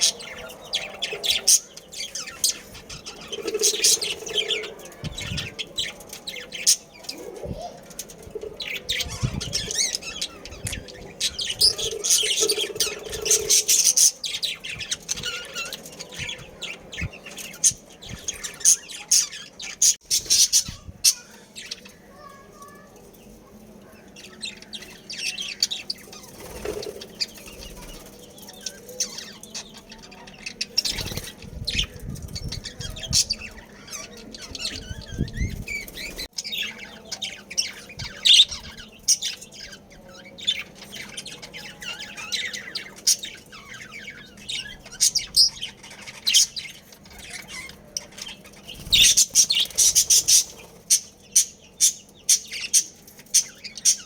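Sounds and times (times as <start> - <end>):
budgerigars chirping and chattering: 0.0 - 54.0
loud sharp bird calls: 24.1 - 54.0.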